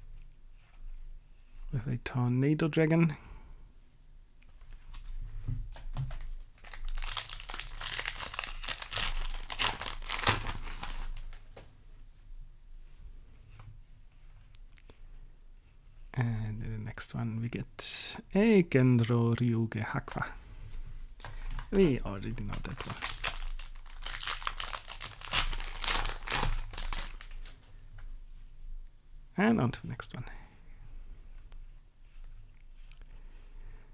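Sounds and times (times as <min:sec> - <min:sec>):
foil wrapper crinkling: 0:05.8 - 0:11.6, 0:21.2 - 0:27.7.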